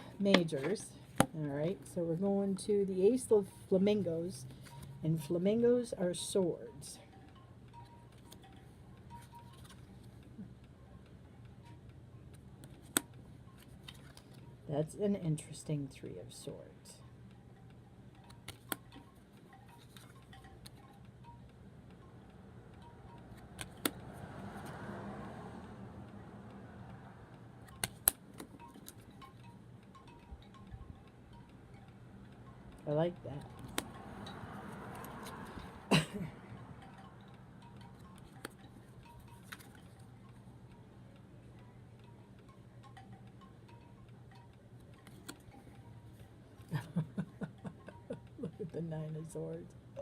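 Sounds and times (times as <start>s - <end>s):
low steady hum: 0.0s - 50.0s
cards clicking: 12.3s - 14.4s, 18.3s - 18.9s, 23.3s - 24.0s, 27.7s - 29.1s, 33.6s - 33.9s, 34.7s - 35.6s, 39.3s - 39.8s, 45.0s - 45.5s.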